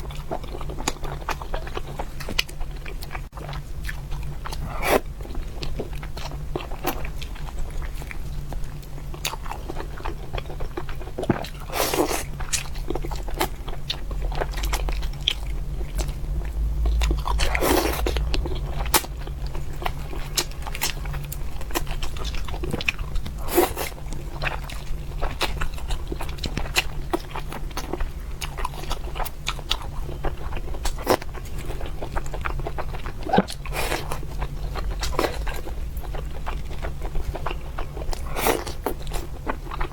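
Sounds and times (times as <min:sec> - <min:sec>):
person chewing crunchy food: 0:00.0 - 0:39.9
low hum: 0:12.8 - 0:26.3.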